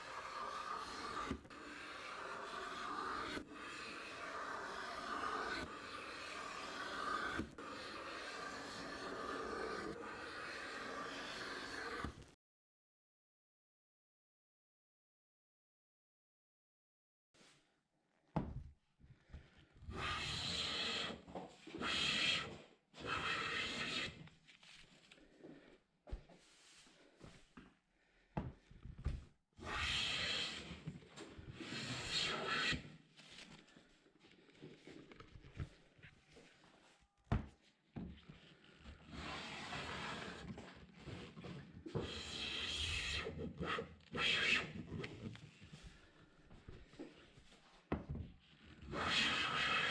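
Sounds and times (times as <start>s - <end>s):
hand plane shaving wood: 0.0s - 12.2s, 19.9s - 24.2s, 31.6s - 32.9s, 39.1s - 45.2s.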